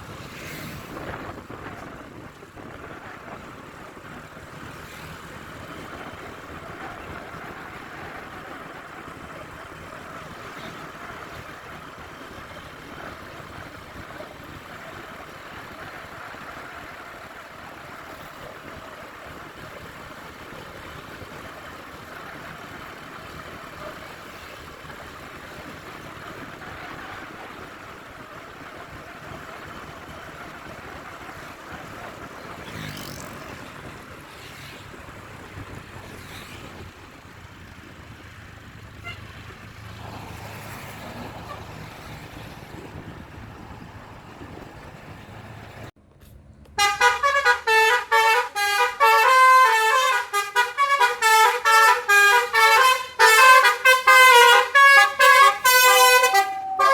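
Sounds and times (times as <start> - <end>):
road traffic engines: 0.0 - 56.9
short sharp high sounds: 56.1 - 56.9.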